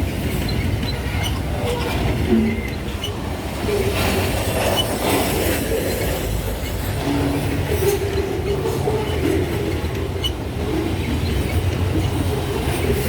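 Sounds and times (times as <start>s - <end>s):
train cars rumbling past: 0.0s - 13.0s
wheel clicks on rail: 0.0s - 13.0s
train wheels squealing: 4.0s - 10.4s.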